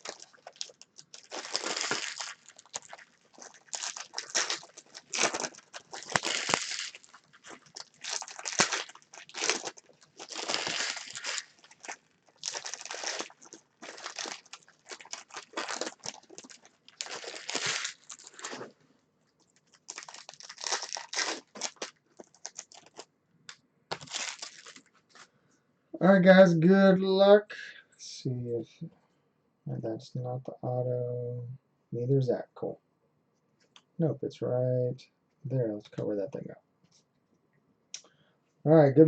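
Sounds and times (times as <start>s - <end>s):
foil packaging crinkling and tearing: 0.0s - 18.8s, 19.5s - 23.1s, 23.9s - 25.2s.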